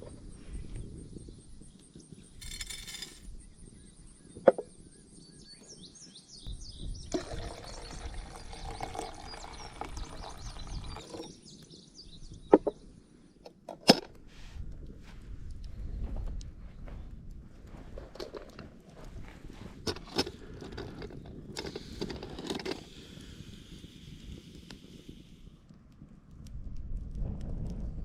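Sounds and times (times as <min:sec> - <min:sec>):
birds chirping and trilling: 0:00.0 - 0:13.5
rustling scraping noise: 0:02.4 - 0:03.3, 0:17.8 - 0:23.0.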